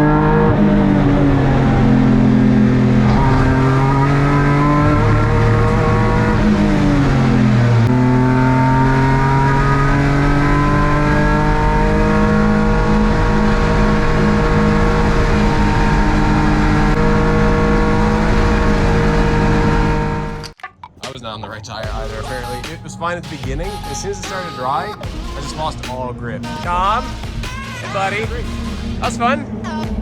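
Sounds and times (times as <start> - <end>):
race car engine revving: 0.0 - 20.5, 21.8 - 30.0
road and wind noise: 0.0 - 30.0.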